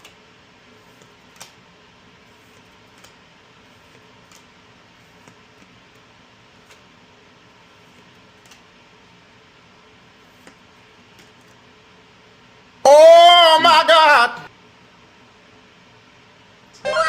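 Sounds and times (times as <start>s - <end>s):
cards being handled clicks: 0.9s - 1.6s, 2.5s - 3.2s, 3.8s - 4.5s, 6.6s - 6.9s, 7.9s - 8.7s.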